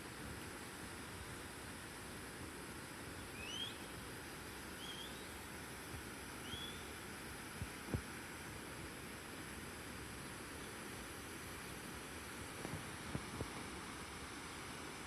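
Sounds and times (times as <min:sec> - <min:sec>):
bird chirping: 0:03.4 - 0:03.8, 0:06.4 - 0:06.8.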